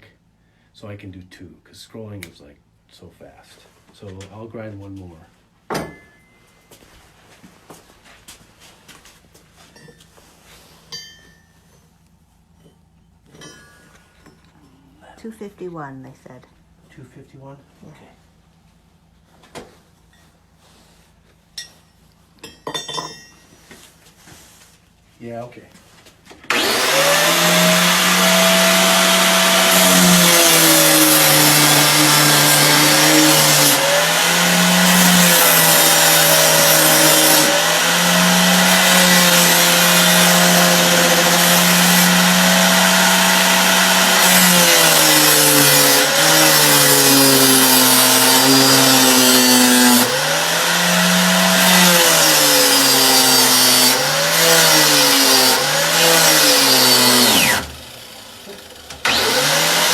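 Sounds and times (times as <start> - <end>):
grinder motor humming: 26.5 - 59.9.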